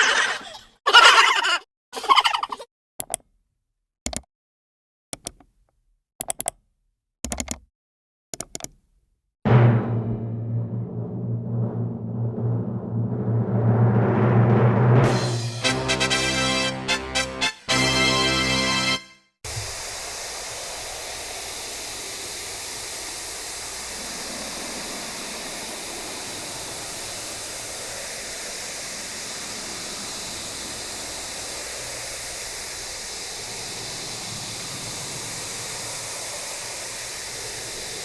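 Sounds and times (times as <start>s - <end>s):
steady rushing noise: 9.5s - 14.4s.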